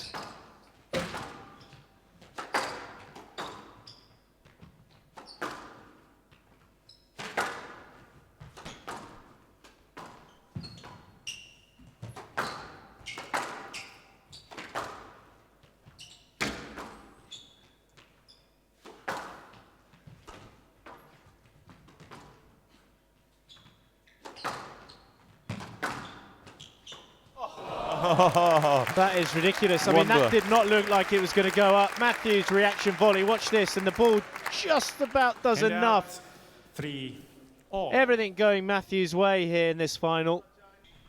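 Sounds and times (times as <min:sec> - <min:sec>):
squash ball hitting racket and walls: 0:00.0 - 0:06.4, 0:07.2 - 0:11.1, 0:11.8 - 0:15.4, 0:16.4 - 0:17.3, 0:18.8 - 0:22.4, 0:24.1 - 0:27.2
shoes squeaking on court: 0:10.0 - 0:14.7, 0:15.8 - 0:16.4, 0:23.1 - 0:27.3.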